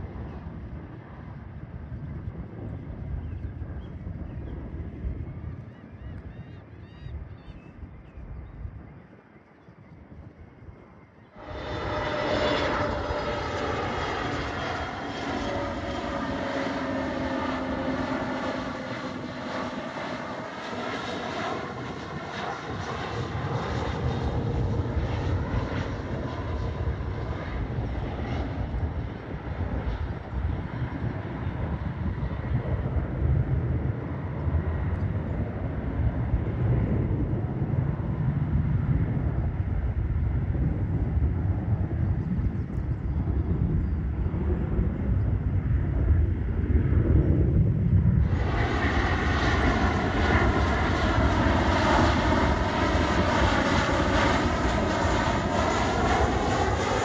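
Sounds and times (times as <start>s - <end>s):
jet engines whining: 11.3s - 39.6s, 43.6s - 57.0s
deep engine rumble: 11.3s - 57.0s.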